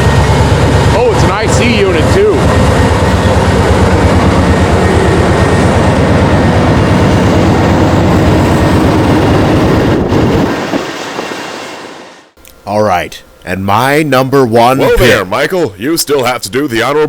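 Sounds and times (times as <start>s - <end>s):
train rumbling past: 0.0s - 12.4s.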